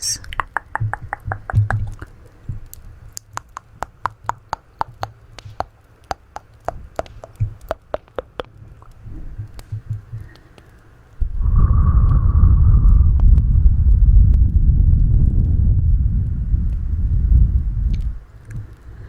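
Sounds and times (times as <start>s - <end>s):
wet tongue clicks: 0.0s - 2.2s, 3.1s - 10.7s.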